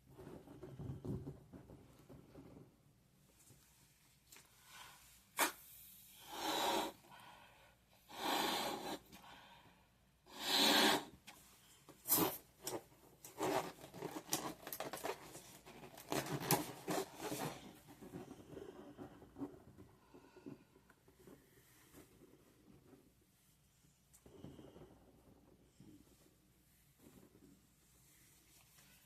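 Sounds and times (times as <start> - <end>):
breaths blown into balloon: 5.4 - 7.2, 8.0 - 9.4, 10.3 - 11.2
rubbery balloon crackles and squeaks: 12.0 - 23.3.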